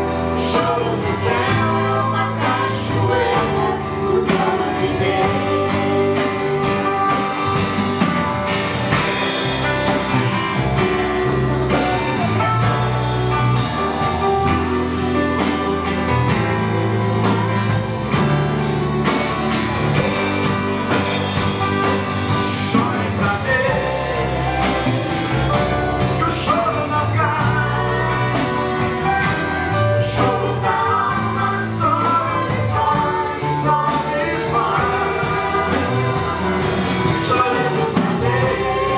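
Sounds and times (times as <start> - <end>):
person singing: 0.0 - 7.8, 10.8 - 13.0, 20.0 - 38.9
band with guitar and bass: 0.0 - 38.9.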